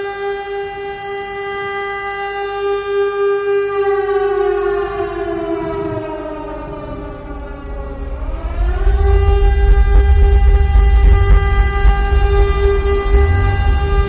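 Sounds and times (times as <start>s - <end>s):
tornado warning siren: 0.0s - 14.0s
loud low rumble: 5.8s - 14.0s.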